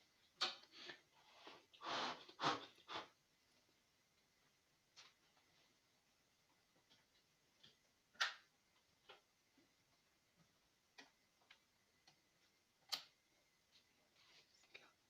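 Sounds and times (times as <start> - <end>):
small sharp clicks and taps: 10.4 - 13.2.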